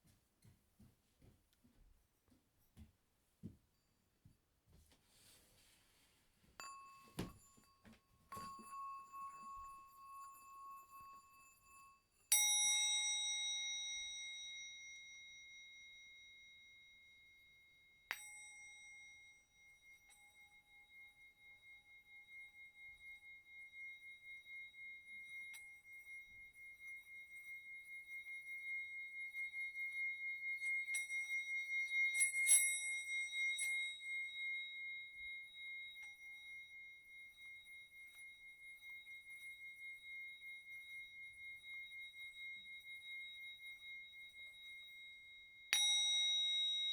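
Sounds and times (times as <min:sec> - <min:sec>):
pulsing ring of rubbed bowl: 0:06.6 - 0:46.9.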